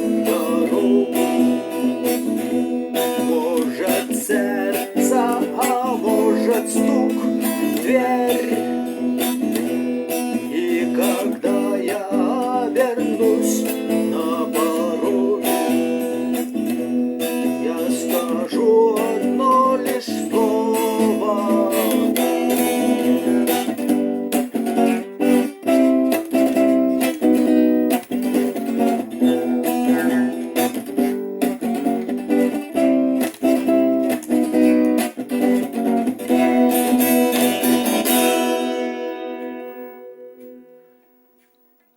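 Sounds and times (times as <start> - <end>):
person singing: 0.0 - 9.5, 10.1 - 16.6, 17.2 - 23.8, 29.2 - 30.7
acoustic guitar strumming: 0.0 - 41.9.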